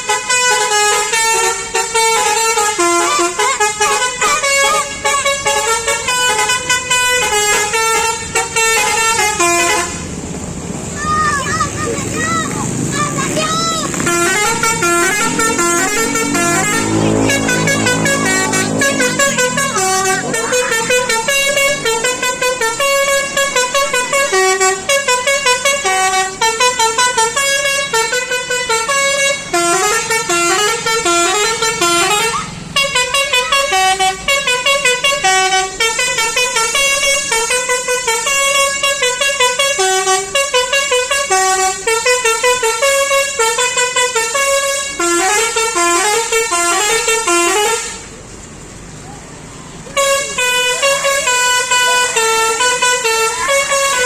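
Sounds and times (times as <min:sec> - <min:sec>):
multi-tone musical bus horn: 0:00.0 - 0:10.2, 0:11.2 - 0:48.3, 0:49.8 - 0:54.0
low drone: 0:13.8 - 0:23.8.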